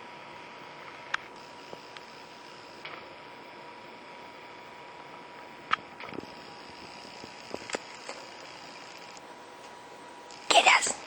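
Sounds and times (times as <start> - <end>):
low room noise hiss: 0.0 - 11.0.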